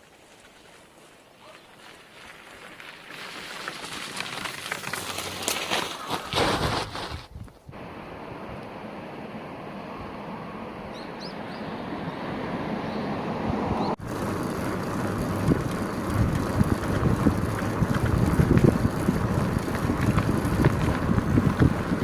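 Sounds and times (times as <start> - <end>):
wind buffeting microphone: 13.4 - 22.0.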